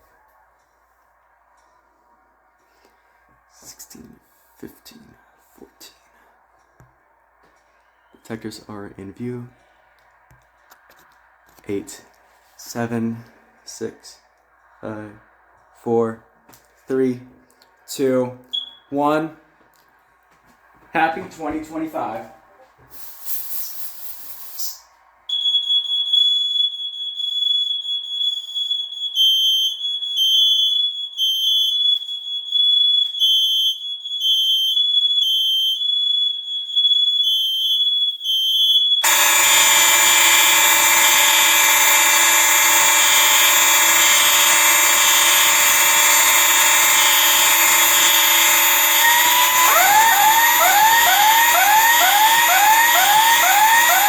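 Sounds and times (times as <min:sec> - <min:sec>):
smoke alarm beeping: 0:18.6 - 0:18.9, 0:24.3 - 0:54.0
fire alarm horns and sounders: 0:25.3 - 0:54.0.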